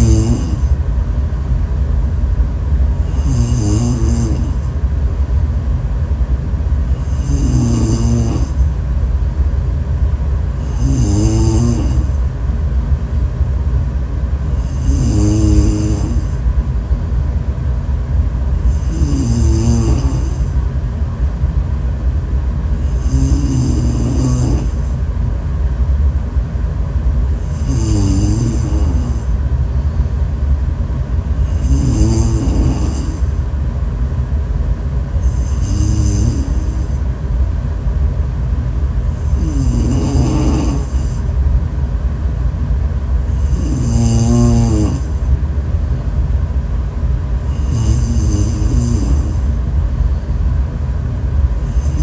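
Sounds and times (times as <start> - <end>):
person snoring with whistle: 0.0 - 0.7, 3.1 - 4.6, 7.0 - 8.6, 10.6 - 12.1, 14.6 - 16.4, 18.7 - 20.5, 22.8 - 24.9, 27.5 - 29.3, 31.4 - 33.3, 35.2 - 37.0, 39.2 - 41.2, 43.3 - 45.1, 47.5 - 49.5, 51.7 - 52.0
constant low rumble: 0.0 - 52.0.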